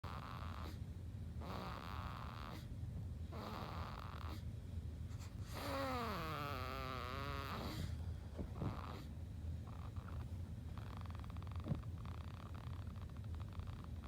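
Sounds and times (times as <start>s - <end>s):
baby snoring: 0.1s - 0.8s, 1.4s - 2.7s, 3.3s - 4.5s, 5.4s - 8.0s, 8.6s - 9.1s.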